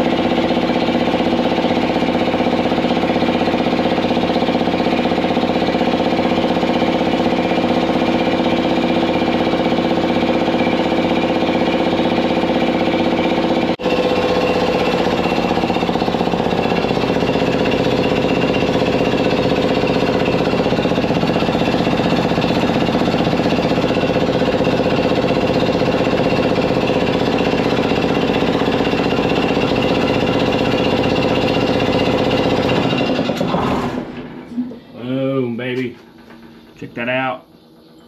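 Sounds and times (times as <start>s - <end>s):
air compressor pumping: 0.0s - 38.0s.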